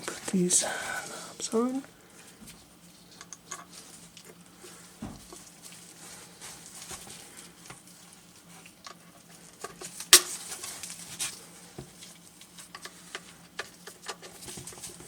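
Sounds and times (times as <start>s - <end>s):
faint steady hum: 0.0s - 15.0s
dull thump: 5.0s - 5.3s.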